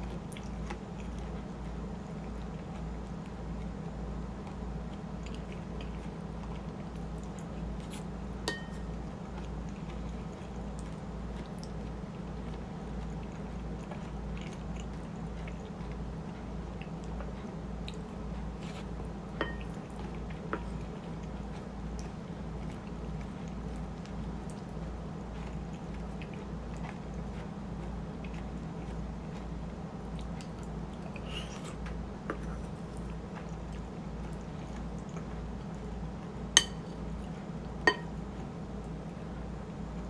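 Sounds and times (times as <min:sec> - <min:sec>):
chewing food: 0:00.0 - 0:39.9
utensil clinking against dish: 0:08.5 - 0:09.0, 0:19.4 - 0:19.8, 0:36.6 - 0:38.2.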